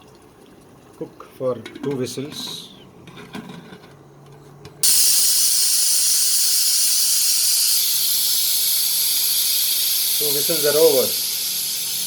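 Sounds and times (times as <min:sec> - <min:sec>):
pressure cooker whistle hissing steam: 0:04.8 - 0:12.0.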